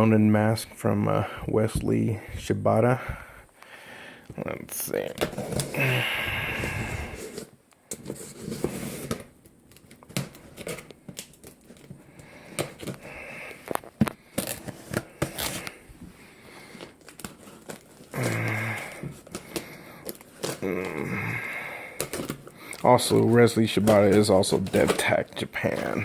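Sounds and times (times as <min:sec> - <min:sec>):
packaging crinkling and tearing: 0:07.1 - 0:15.9, 0:16.5 - 0:26.0.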